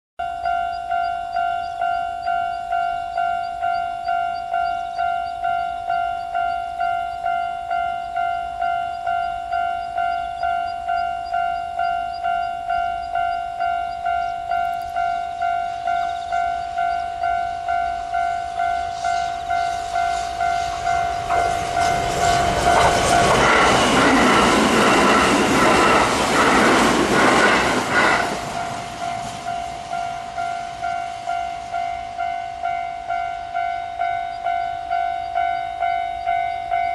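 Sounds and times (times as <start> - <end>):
level-crossing warning bell: 0.2 - 36.9
train wheels clattering over rail joints: 19.1 - 30.7.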